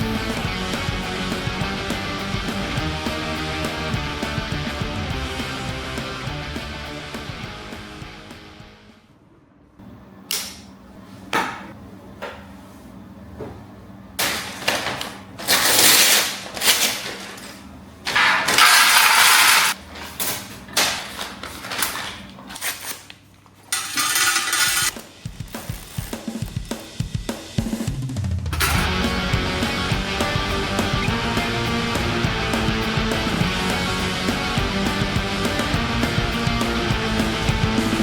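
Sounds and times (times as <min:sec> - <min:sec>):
packaging rustling: 0:19.0 - 0:23.6.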